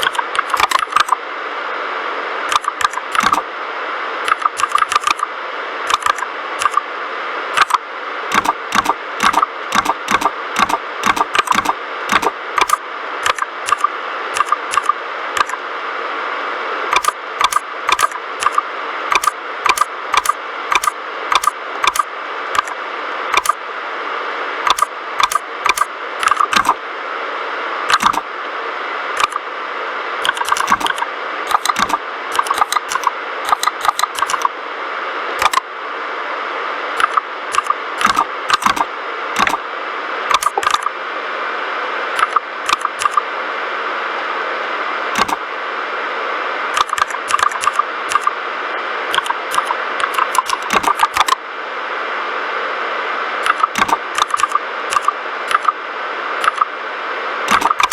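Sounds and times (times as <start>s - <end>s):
mechanical keyboard typing: 0.0s - 1.2s, 2.5s - 3.4s, 4.3s - 5.3s, 5.9s - 6.8s, 7.6s - 15.6s, 16.9s - 23.6s, 24.7s - 26.8s, 27.9s - 28.2s, 29.2s - 29.4s, 30.2s - 34.5s, 35.4s - 35.6s, 37.0s - 39.6s, 40.3s - 40.9s, 42.2s - 43.2s, 45.2s - 45.4s, 46.8s - 48.3s, 49.1s - 51.4s, 53.4s - 55.8s, 56.4s - 56.7s, 57.5s - 57.9s.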